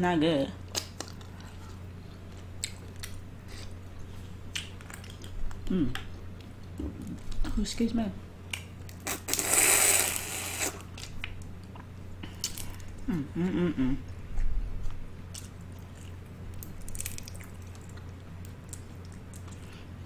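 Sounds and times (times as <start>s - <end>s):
person chewing food: 0.7s - 7.4s, 14.0s - 20.0s.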